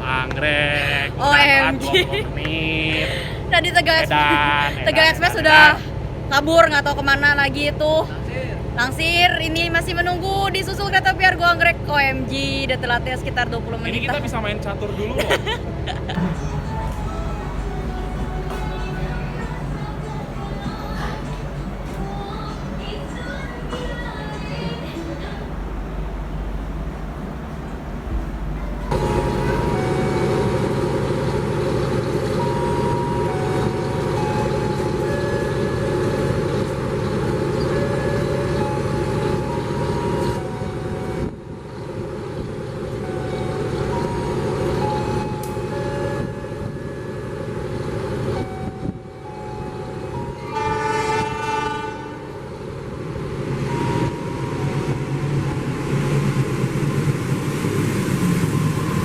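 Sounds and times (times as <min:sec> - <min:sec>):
low railway rumble: 0:00.0 - 0:59.0
passing train rumble: 0:00.0 - 0:59.0
train horn: 0:16.2 - 0:31.6, 0:43.0 - 0:52.7.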